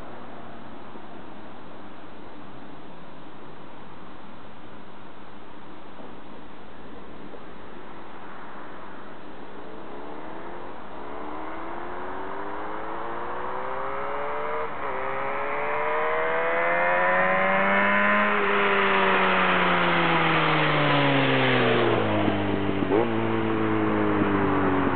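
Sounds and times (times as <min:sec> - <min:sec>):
motorcycle engine revving: 0:09.7 - 0:24.9.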